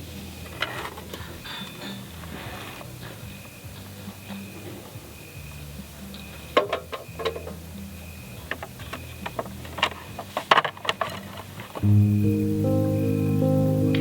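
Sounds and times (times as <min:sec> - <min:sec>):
low steady hum: 0:11.8 - 0:14.0.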